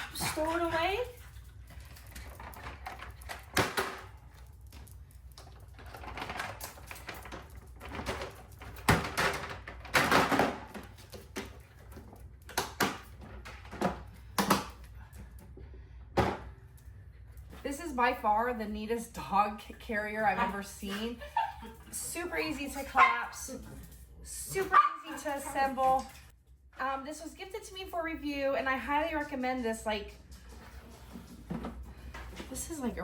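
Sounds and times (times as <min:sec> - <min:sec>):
dog crate clicking and rattling: 0:05.4 - 0:13.8.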